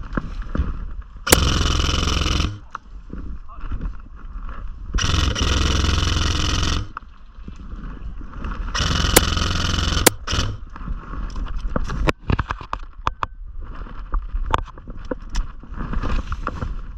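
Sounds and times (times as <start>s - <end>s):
airsoft rifle full-auto bursts: 1.3s - 2.8s, 5.0s - 7.0s, 8.8s - 10.7s
sharp clicks: 1.3s - 2.8s, 5.0s - 7.1s, 8.8s - 10.8s.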